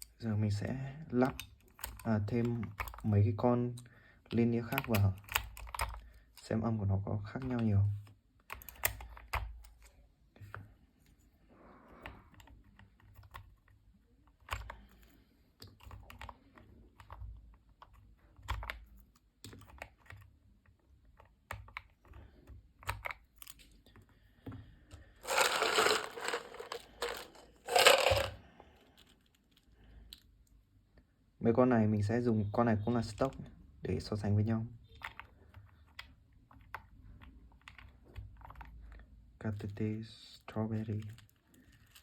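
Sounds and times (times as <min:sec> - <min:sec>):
handling noise: 0:25.2 - 0:28.4.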